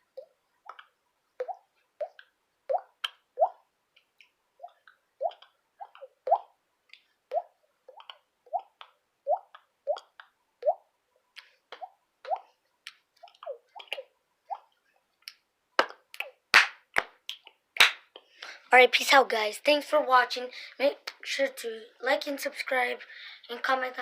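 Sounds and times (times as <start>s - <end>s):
person making water-drop plops: 0.2s - 18.3s.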